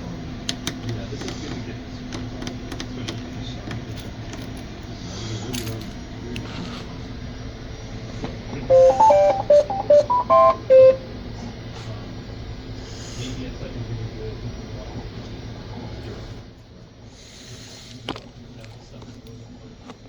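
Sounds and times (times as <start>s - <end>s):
printer beeping electronic tune: 8.7s - 11.1s.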